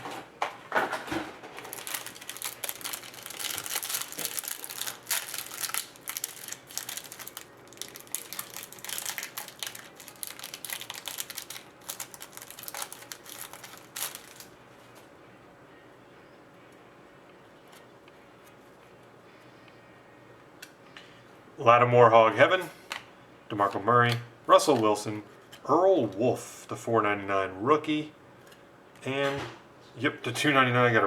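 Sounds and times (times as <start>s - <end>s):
plastic wrapping crinkling and tearing: 1.5s - 14.6s.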